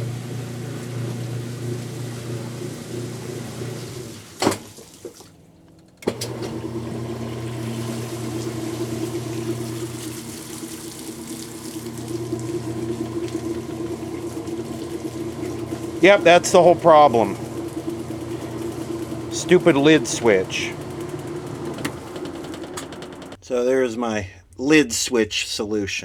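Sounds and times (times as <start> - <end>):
washing machine motor hum: 0.0 - 23.4
washing machine clicking: 0.2 - 23.4
water rushing: 6.1 - 23.4.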